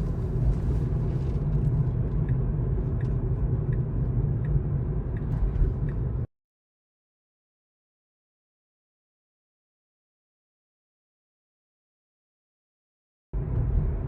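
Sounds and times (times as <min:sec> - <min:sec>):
road and tyre rumble: 0:00.0 - 0:06.3, 0:13.4 - 0:14.0.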